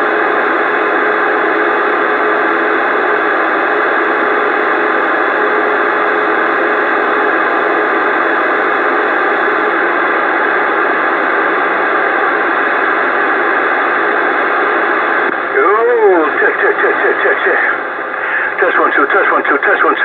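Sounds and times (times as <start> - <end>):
radio static hiss: 11.7 - 20.0
faint steady tones: 15.3 - 20.0.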